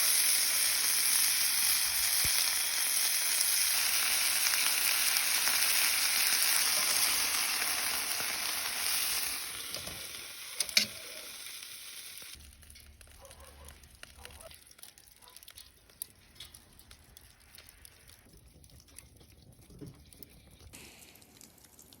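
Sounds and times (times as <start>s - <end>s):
steak sizzling in frying pan: 0.0s - 13.1s.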